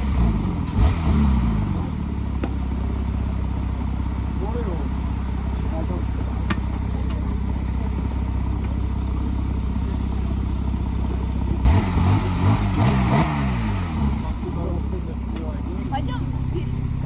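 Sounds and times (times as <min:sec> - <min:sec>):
car engine revving: 0:00.0 - 0:03.3, 0:11.4 - 0:17.0
car engine idling: 0:00.0 - 0:17.0.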